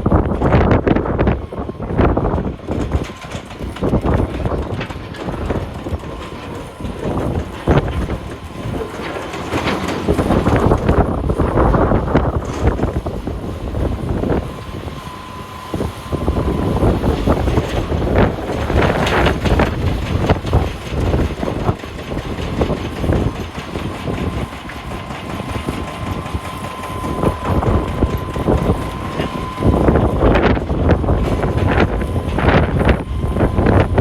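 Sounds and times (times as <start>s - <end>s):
diesel engine running under load: 0.0s - 34.0s
rocks knocking and clattering: 2.6s - 11.6s
high whine: 10.0s - 21.8s.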